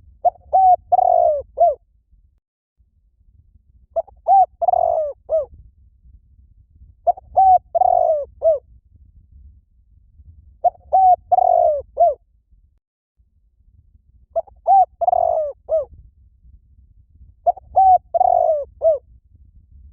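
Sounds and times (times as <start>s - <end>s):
dove cooing: 0.2s - 1.8s, 4.0s - 5.5s, 7.1s - 8.6s, 10.6s - 12.2s, 14.4s - 15.9s, 17.5s - 19.0s.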